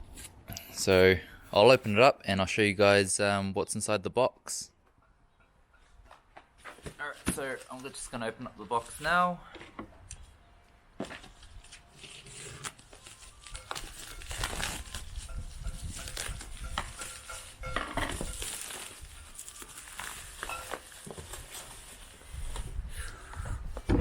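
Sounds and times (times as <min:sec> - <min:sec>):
packaging rustling and crinkling: 0:11.0 - 0:22.7.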